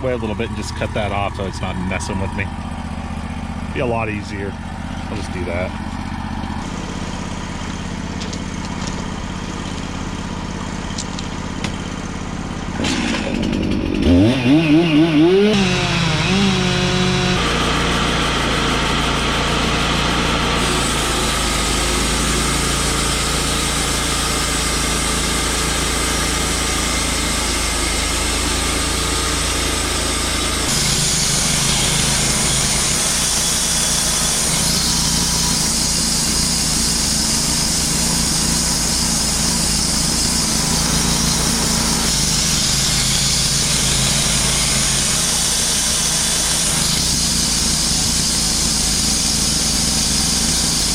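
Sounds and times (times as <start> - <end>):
sawmill band saw cutting log: 0.0 - 50.9.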